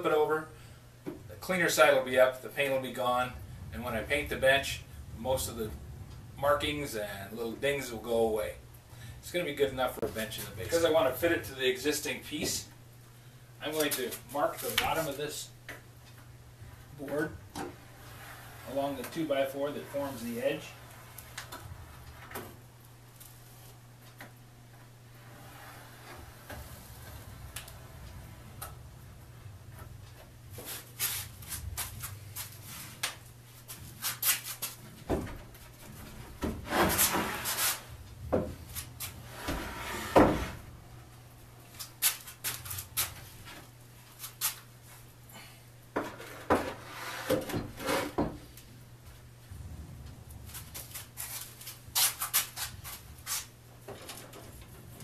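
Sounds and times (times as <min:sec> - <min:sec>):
steady low hum: 0:00.0 - 0:55.0
wood knocking and scraping: 0:25.2 - 0:40.6, 0:46.0 - 0:48.5.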